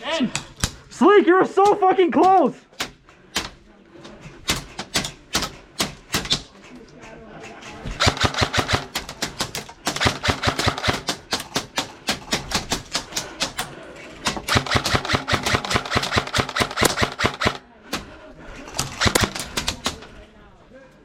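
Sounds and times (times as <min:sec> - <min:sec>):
airsoft gun rapid bursts: 0:07.8 - 0:13.6, 0:14.3 - 0:17.6, 0:18.8 - 0:19.9.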